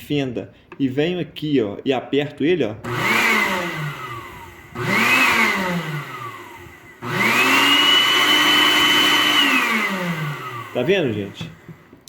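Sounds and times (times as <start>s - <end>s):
blender motor whining: 2.8s - 12.0s.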